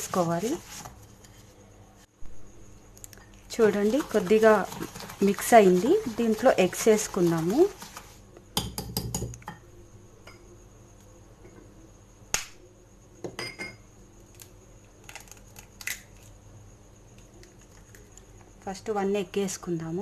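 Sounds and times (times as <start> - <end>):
mixing bowl and utensils clinking: 3.5 - 9.4.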